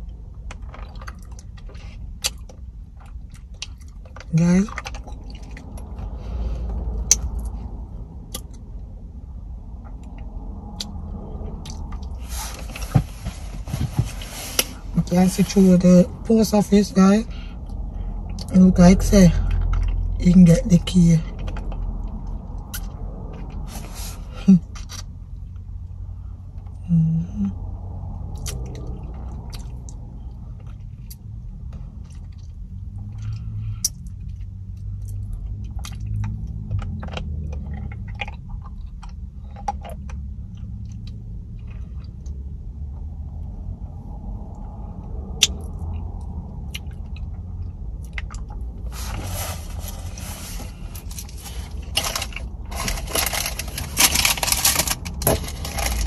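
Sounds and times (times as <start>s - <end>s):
low rumble inside car: 0.0s - 56.0s
loud rustling and scraping: 12.1s - 15.8s, 23.6s - 24.4s, 48.8s - 56.0s.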